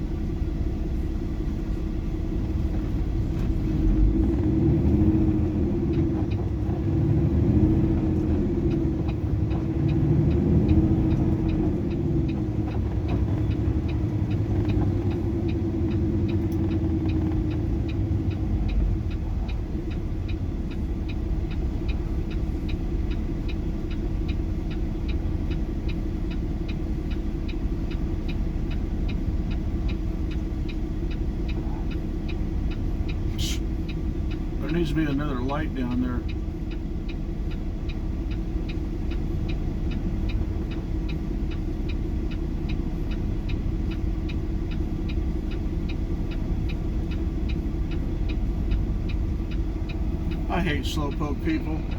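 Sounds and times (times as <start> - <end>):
truck engine from inside cab: 0.0 - 51.9
light ticking: 0.1 - 51.9.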